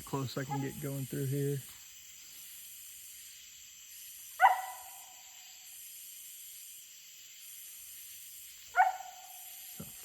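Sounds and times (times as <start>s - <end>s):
steady high hiss: 0.0s - 10.0s
dog barking: 4.4s - 5.0s, 8.8s - 9.2s.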